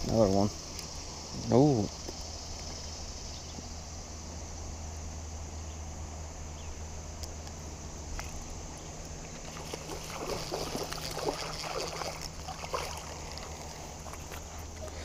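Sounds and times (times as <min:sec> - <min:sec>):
high-pitched insect chorus: 0:00.0 - 0:15.0
low steady hum: 0:00.0 - 0:15.0
faint ticks: 0:00.2 - 0:01.0.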